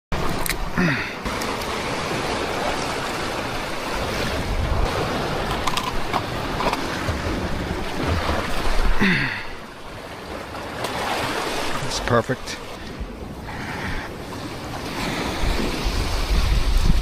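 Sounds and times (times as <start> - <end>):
ocean surf washing: 0.2 - 17.0
wind buffeting microphone: 1.7 - 9.0, 12.8 - 17.0.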